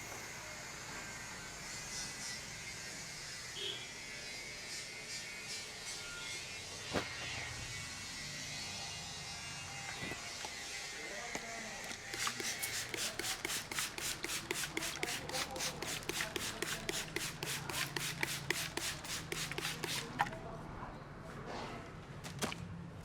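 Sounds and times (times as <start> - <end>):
hands rubbing hair and scalp: 12.2 - 20.2.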